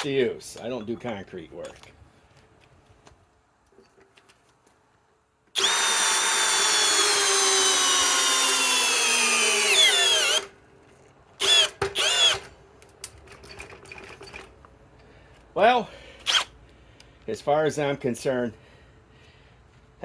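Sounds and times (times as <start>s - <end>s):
cordless drill driving screw into wood: 5.5s - 10.5s, 11.4s - 12.5s, 16.2s - 16.5s.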